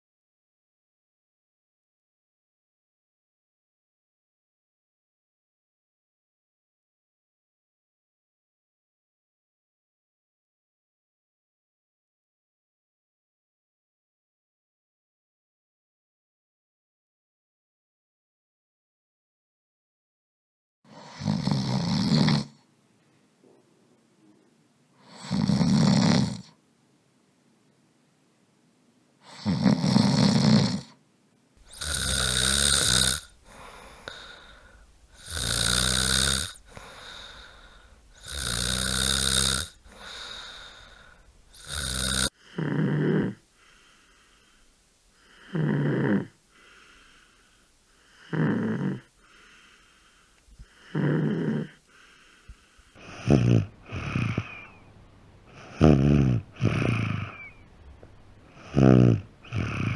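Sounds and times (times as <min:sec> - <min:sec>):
loud rattling snoring: 0:20.9 - 0:22.6, 0:25.0 - 0:26.6, 0:29.3 - 0:31.0, 0:31.6 - 0:43.4, 0:45.3 - 0:47.2, 0:48.2 - 0:49.6, 0:50.6 - 0:52.3, 0:52.9 - 0:54.8, 0:55.5 - 0:57.6, 0:58.5 - 0:59.9.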